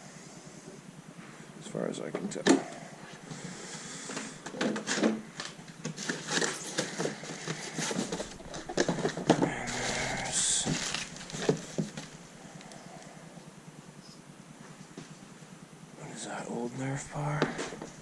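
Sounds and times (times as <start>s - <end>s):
parts knocking and clattering: 4.1s - 9.8s
packing material rustling: 4.8s - 12.8s.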